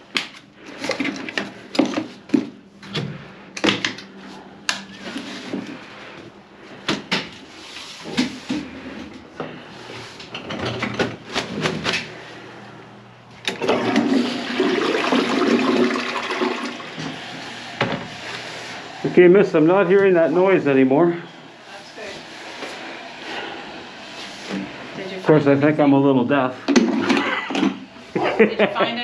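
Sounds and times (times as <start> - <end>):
toilet flushing: 13.4 - 20.8, 22.3 - 28.0.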